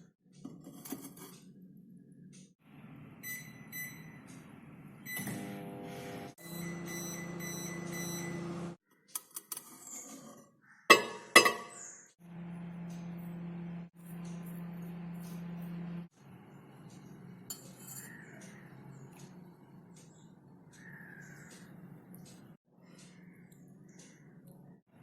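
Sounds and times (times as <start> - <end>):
microwave oven humming: 2.8 - 8.8, 12.2 - 17.5.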